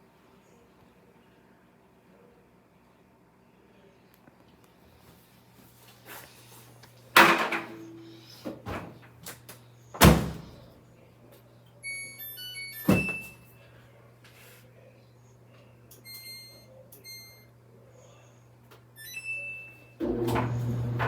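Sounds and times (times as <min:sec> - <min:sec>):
heavy thunks of washing machine: 0:10.0 - 0:10.6, 0:20.0 - 0:21.0
washing machine door shutting: 0:10.0 - 0:10.6, 0:20.0 - 0:21.0.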